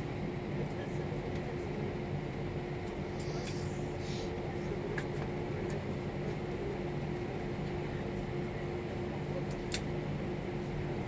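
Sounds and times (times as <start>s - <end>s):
aircraft cabin hum: 0.0s - 11.0s.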